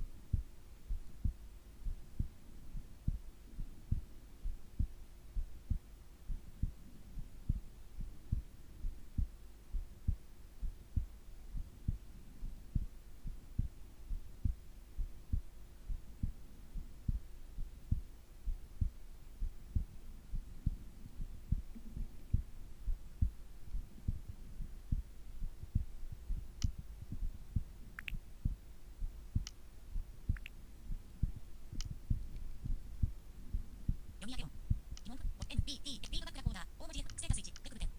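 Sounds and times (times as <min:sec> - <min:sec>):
heartbeat: 0:00.0 - 0:37.4
faint constant hum: 0:00.0 - 0:37.9
faint clicks: 0:26.6 - 0:26.8, 0:28.0 - 0:28.2, 0:29.4 - 0:29.6, 0:30.3 - 0:30.6.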